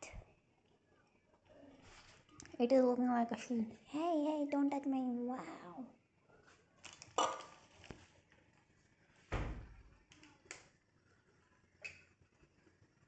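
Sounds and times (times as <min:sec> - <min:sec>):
dull deep thump: 0:09.3 - 0:09.8.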